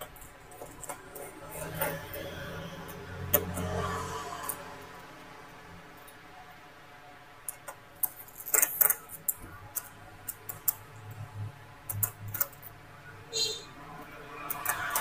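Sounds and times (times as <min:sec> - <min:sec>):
small clicks: 0:14.4 - 0:15.0.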